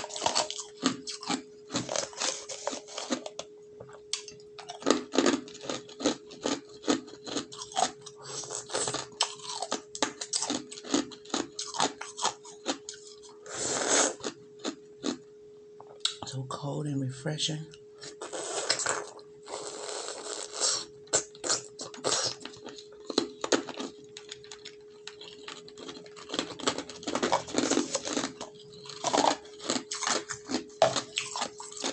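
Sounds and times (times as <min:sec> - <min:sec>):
ice crunching while chewed: 0:00.0 - 0:15.2, 0:18.0 - 0:31.9.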